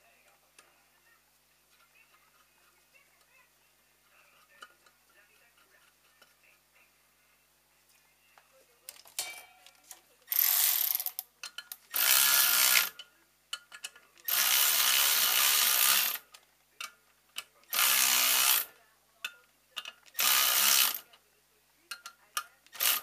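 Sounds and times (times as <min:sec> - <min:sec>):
handheld power tool running: 0:11.9 - 0:13.0, 0:14.3 - 0:16.2, 0:17.7 - 0:18.7, 0:20.1 - 0:21.1, 0:22.7 - 0:23.0.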